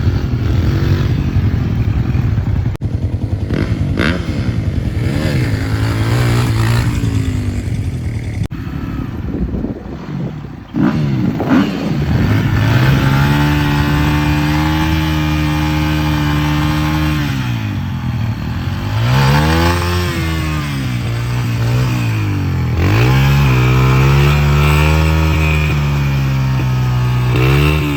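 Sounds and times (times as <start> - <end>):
small engine revving: 2.8 - 27.9.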